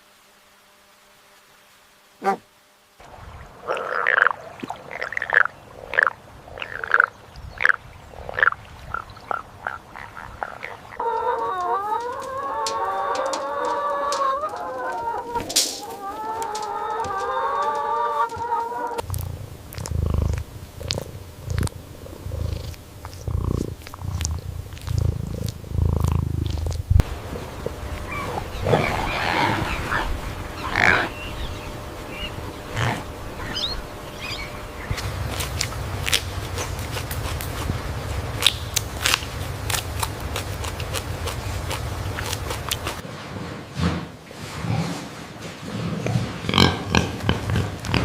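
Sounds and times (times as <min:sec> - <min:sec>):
chicken clucking: 0:09.3 - 0:24.4
low irregular grunting: 0:18.9 - 0:31.2, 0:32.2 - 0:38.4
long wavering animal call: 0:27.9 - 0:35.7.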